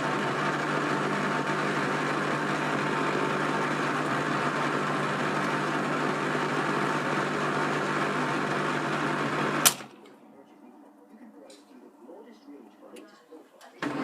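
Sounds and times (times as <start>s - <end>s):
washing machine running: 0.0s - 9.9s.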